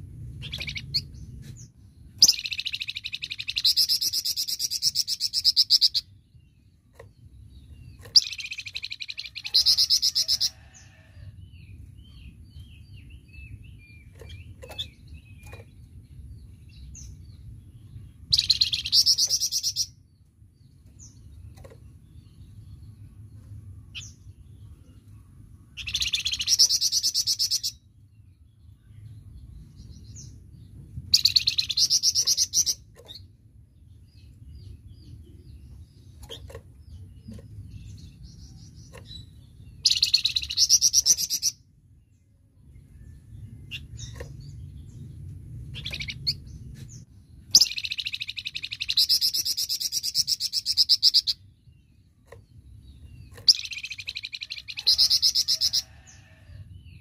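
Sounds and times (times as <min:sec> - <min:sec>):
steady low hum: 0:00.0 - 0:55.3
songbird trilling: 0:00.4 - 0:01.1, 0:02.2 - 0:06.1, 0:18.3 - 0:20.0, 0:45.7 - 0:46.4, 0:47.5 - 0:51.5, 0:53.1 - 0:56.1.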